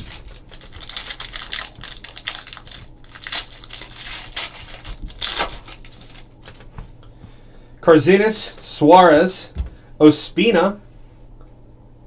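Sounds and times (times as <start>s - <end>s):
wrapper crinkling and tearing: 0.0s - 6.7s
cards being handled: 0.0s - 7.0s.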